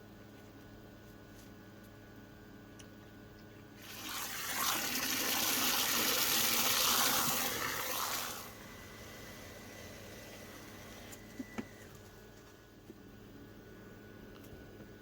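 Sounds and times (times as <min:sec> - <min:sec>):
low steady hum: 0:00.0 - 0:15.0
water spraying: 0:03.8 - 0:08.5.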